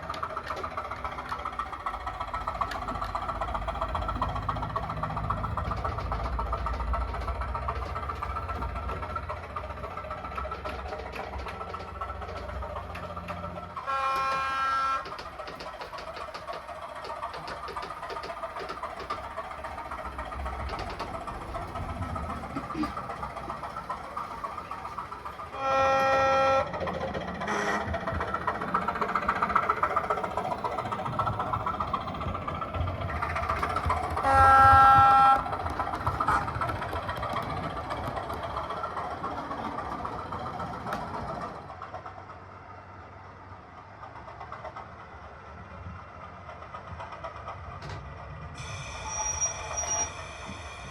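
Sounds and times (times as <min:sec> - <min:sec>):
diesel engine running: 0:00.0 - 0:46.1
train horn blasts: 0:13.8 - 0:15.0, 0:25.6 - 0:26.7, 0:27.4 - 0:27.9, 0:34.2 - 0:35.5.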